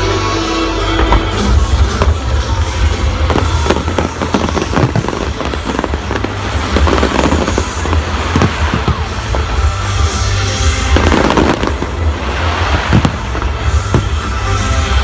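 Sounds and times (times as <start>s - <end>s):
fireworks bangs and crackles: 0.0s - 15.0s
rock music: 0.0s - 15.0s.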